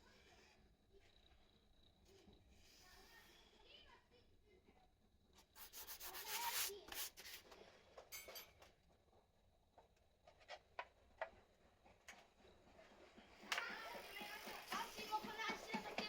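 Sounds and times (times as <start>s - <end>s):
hand rubbing a surface: 5.4s - 7.4s.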